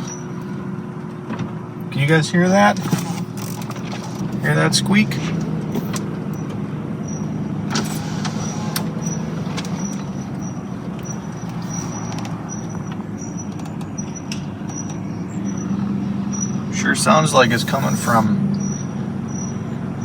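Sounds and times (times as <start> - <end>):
truck running hum: 0.0 - 20.0
high-pitched wheel squeak: 5.8 - 16.6, 17.4 - 19.7.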